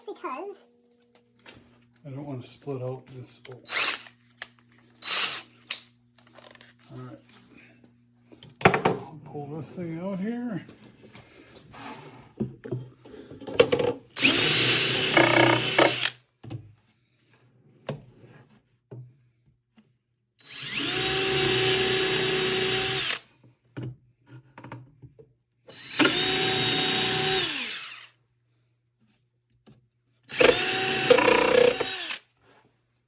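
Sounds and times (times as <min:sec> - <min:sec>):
power drill whining: 0:03.7 - 0:04.2, 0:05.0 - 0:05.6, 0:14.2 - 0:16.2, 0:20.4 - 0:23.2, 0:25.7 - 0:28.2, 0:30.3 - 0:32.3.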